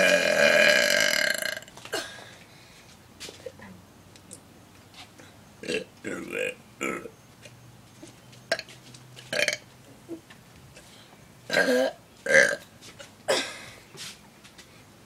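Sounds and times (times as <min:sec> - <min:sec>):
man burping loudly: 0:00.0 - 0:02.2, 0:05.6 - 0:07.1, 0:09.3 - 0:09.6, 0:11.5 - 0:12.6.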